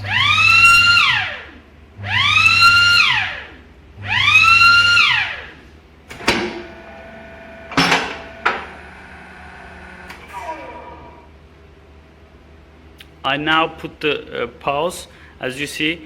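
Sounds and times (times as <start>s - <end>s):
electronic whooping alarm: 0.0s - 5.6s.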